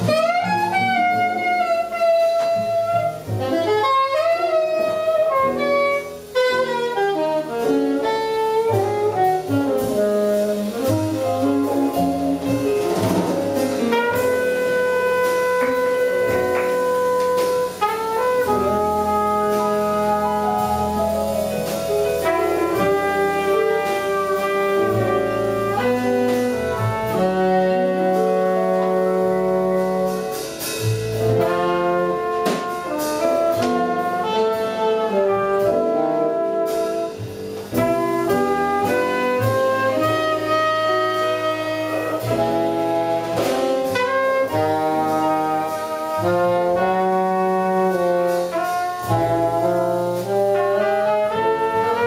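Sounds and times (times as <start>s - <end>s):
saxophone: 0.0s - 12.4s, 31.4s - 52.0s
double bass: 0.0s - 52.0s
drums with cymbal strokes: 0.0s - 52.0s
piano: 0.0s - 52.0s
trumpet: 0.0s - 52.0s.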